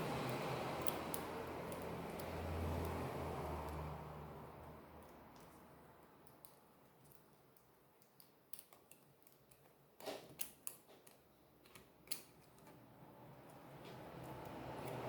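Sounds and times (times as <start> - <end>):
small tools clicking and tapping: 0.8 - 3.9, 5.0 - 12.8.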